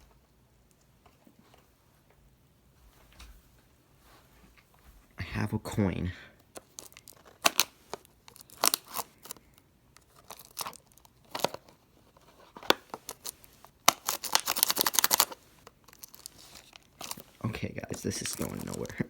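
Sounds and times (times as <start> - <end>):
plastic wrapper crinkling: 6.4 - 19.0.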